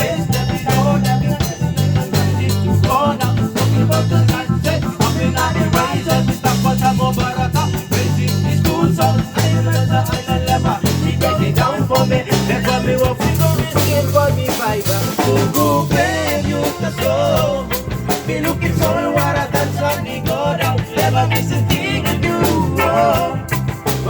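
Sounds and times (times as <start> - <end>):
bass line: 0.0 - 24.0
drum kit: 0.0 - 24.0
wavering lead melody: 0.0 - 24.0.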